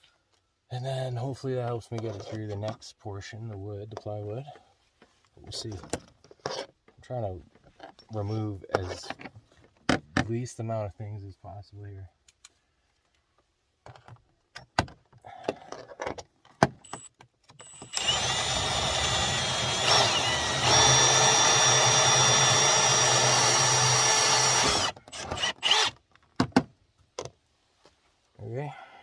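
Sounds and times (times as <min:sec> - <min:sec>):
power drill boring through wall: 0:16.9 - 0:26.0.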